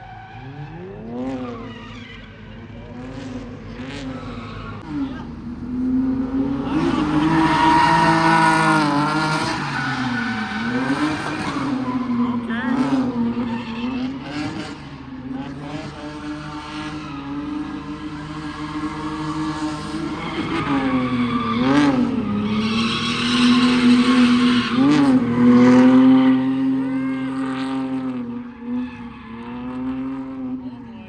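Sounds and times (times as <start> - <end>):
car engine revving high: 0.0 - 30.8
tyres screeching: 6.2 - 14.7, 16.0 - 26.8.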